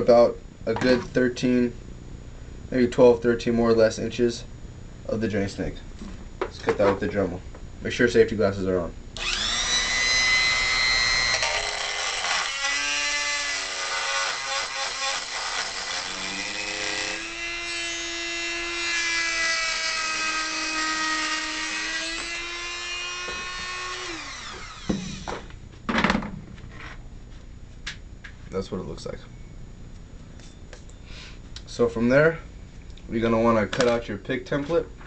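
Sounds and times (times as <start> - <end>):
rotary tool cutting metal: 9.2 - 25.3
rotary tool whining: 9.2 - 25.5.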